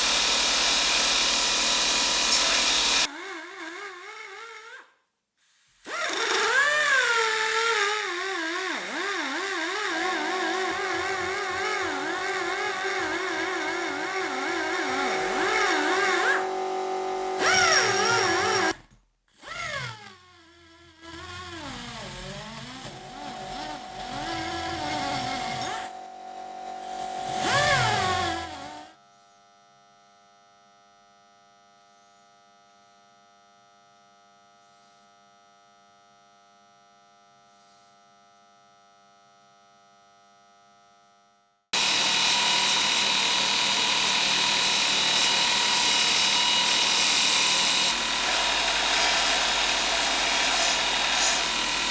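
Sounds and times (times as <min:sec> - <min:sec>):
power tool motor running: 0:00.0 - 0:04.7, 0:05.9 - 0:18.8, 0:20.8 - 0:29.0, 0:41.8 - 0:51.9.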